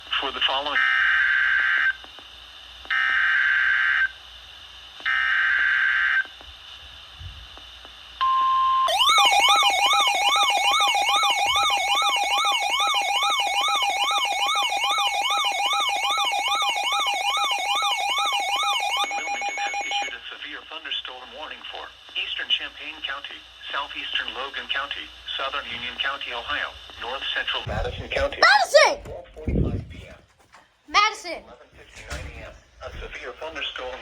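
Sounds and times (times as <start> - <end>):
warbling siren-like alert tone: 8.9 - 20.1.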